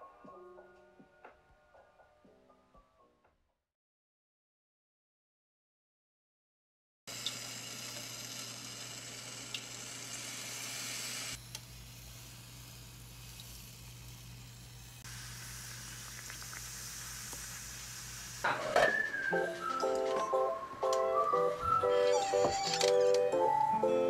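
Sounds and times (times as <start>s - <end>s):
waffle batter sizzling: 7.1s - 18.5s.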